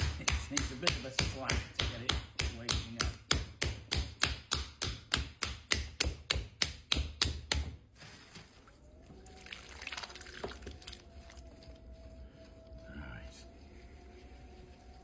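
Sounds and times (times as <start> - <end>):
hands slapping wet clay: 0.0 - 7.8
hands working wet clay: 0.0 - 15.0.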